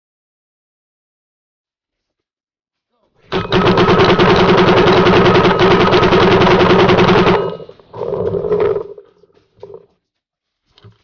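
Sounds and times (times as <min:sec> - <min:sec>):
paintball marker firing: 0:03.4 - 0:07.7.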